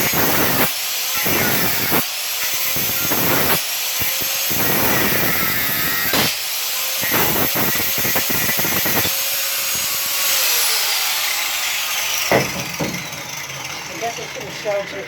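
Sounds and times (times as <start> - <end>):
angle grinder on metal: 0.0 - 15.0
sharp knock: 12.3 - 13.2.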